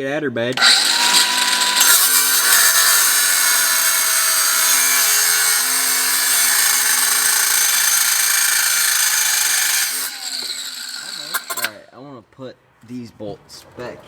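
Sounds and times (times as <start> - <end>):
angle grinder cutting steel pipe: 0.5 - 11.8.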